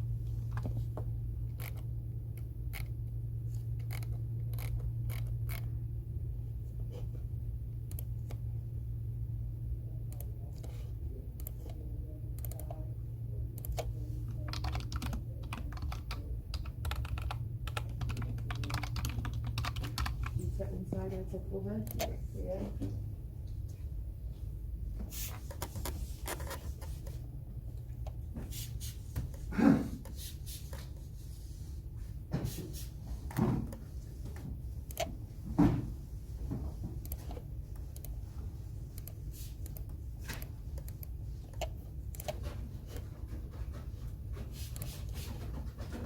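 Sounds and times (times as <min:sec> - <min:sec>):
keyboard typing: 0:03.8 - 0:05.7, 0:10.1 - 0:11.8, 0:12.4 - 0:12.9, 0:13.5 - 0:20.4, 0:38.9 - 0:43.1.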